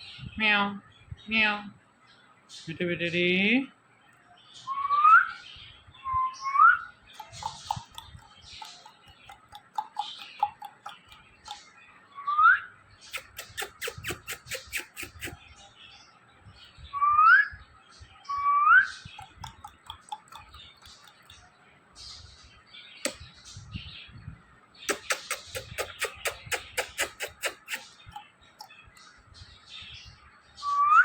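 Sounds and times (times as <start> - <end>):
parrot chatter and clicks: 7.2 - 11.7, 13.1 - 15.4, 19.1 - 21.4, 24.9 - 28.8.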